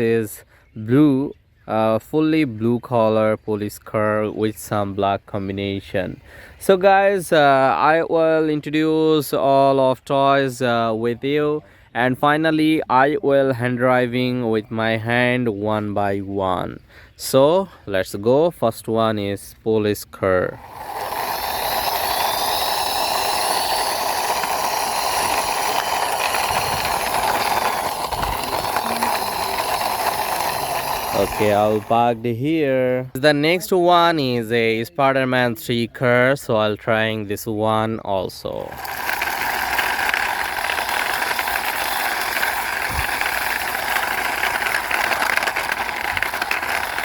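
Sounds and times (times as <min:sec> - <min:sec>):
toy car wheels rolling: 0:06.5 - 0:08.0, 0:20.2 - 0:32.3, 0:38.5 - 0:47.0.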